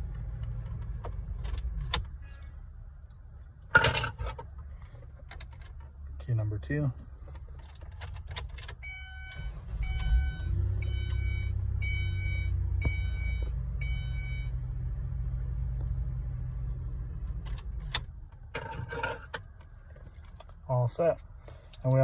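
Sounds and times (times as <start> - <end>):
car engine starting and idling: 0.0 - 22.0
keys rattling: 0.5 - 4.6, 18.6 - 20.6, 21.2 - 22.0
key clicking into ignition: 7.6 - 10.1
dashboard warning chime: 8.8 - 14.6.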